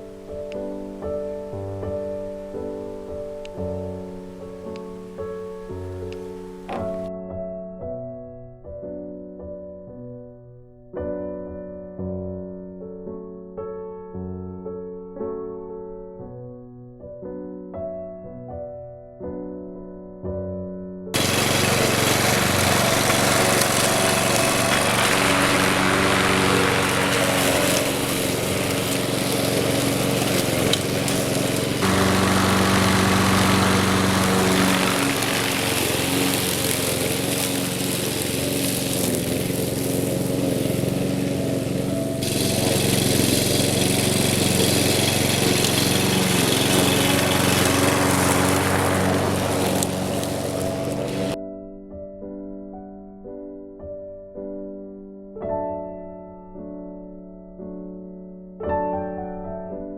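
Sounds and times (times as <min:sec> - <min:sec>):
piano music: 0:00.0 - 0:59.9
lawn mower engine running: 0:21.2 - 0:51.4.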